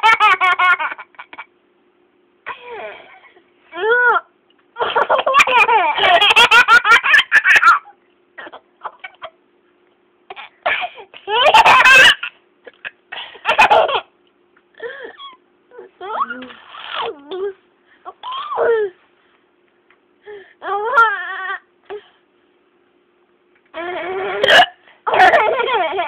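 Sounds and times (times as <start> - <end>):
young child laughing: 0.0 - 1.5, 4.8 - 9.4, 10.3 - 14.1, 18.1 - 19.0, 25.1 - 26.0.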